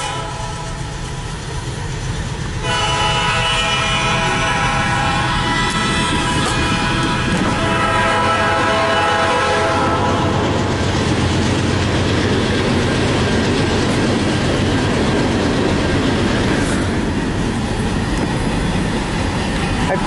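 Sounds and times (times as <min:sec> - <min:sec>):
locomotive horn chord: 0:00.0 - 0:00.8, 0:02.6 - 0:10.5
freight train rolling past: 0:00.0 - 0:20.0.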